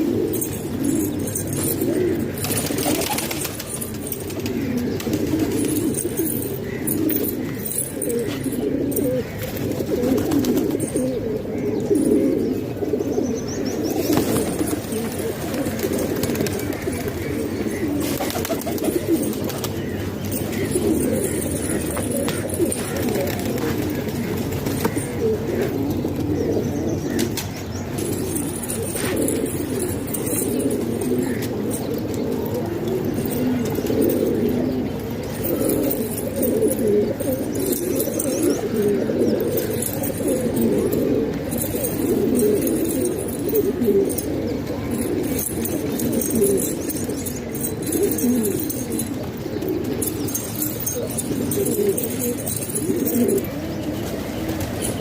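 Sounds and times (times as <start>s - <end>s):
pigeons cooing: 0.0s - 55.0s.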